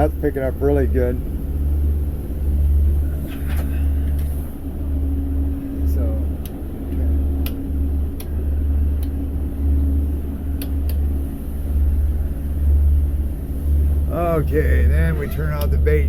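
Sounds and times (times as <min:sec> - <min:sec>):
faint hum: 0:00.0 - 0:16.0
powerboat engine drone: 0:00.0 - 0:16.0
faint clicks: 0:09.0 - 0:09.2, 0:10.6 - 0:11.1.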